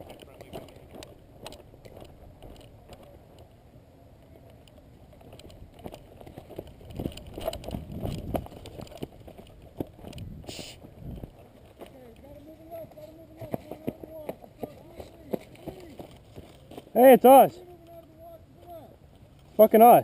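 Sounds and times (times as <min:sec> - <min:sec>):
footsteps on rough ground: 0:00.0 - 0:03.6, 0:04.5 - 0:20.0
gear rustling: 0:04.5 - 0:17.0.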